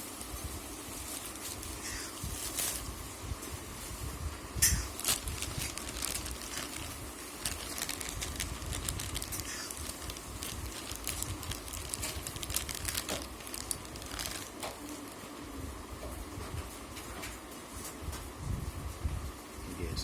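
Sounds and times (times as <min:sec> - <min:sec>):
packaging crinkling and rustling: 0:00.0 - 0:15.3.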